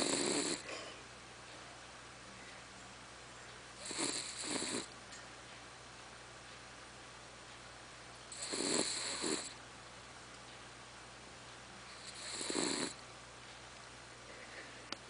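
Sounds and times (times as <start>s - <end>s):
dog snoring with whistling tone: 0.0s - 0.6s, 3.8s - 4.9s, 8.4s - 9.5s, 11.9s - 13.0s.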